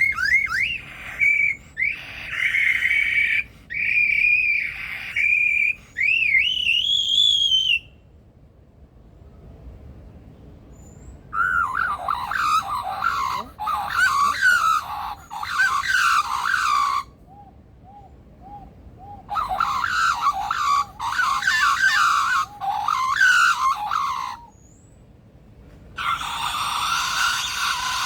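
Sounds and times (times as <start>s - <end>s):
lyrebird mimicked calls: 0.0s - 7.0s, 11.4s - 17.1s, 17.9s - 24.5s, 26.0s - 28.0s.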